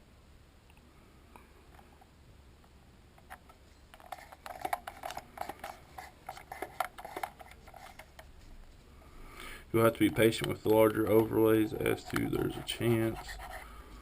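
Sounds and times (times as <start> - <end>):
tweezers clicking and scraping plastic: 3.2 - 8.4, 10.1 - 13.7.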